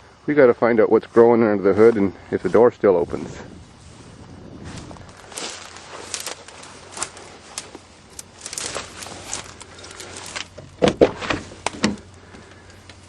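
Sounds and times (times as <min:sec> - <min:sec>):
rustling footsteps: 0:00.4 - 0:13.0
van door clunking: 0:08.0 - 0:13.0
door hinges creaking: 0:08.4 - 0:13.0.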